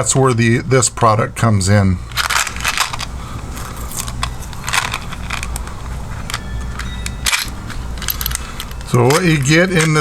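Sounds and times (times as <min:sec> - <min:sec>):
metal hardware rattling: 0:02.1 - 0:10.0
plastic packaging crinkling: 0:02.1 - 0:10.0.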